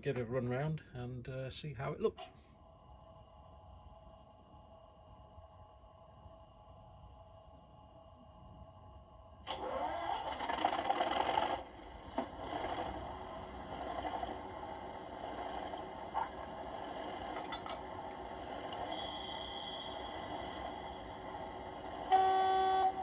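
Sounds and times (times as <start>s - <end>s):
model diesel engine drone: 7.6s - 23.0s
wheels clicking over track: 9.5s - 18.9s
steady horn tone: 22.0s - 23.0s.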